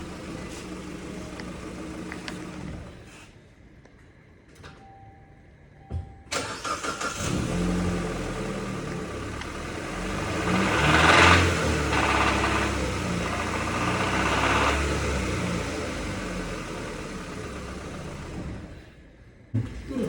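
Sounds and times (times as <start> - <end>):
car engine cranking and idling: 0.0 - 3.2, 6.3 - 19.0.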